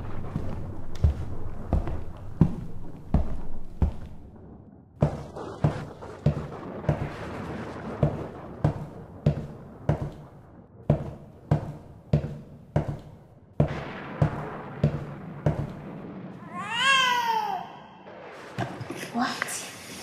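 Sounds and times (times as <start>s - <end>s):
heavy footsteps walking: 0.0s - 4.4s, 5.0s - 15.9s.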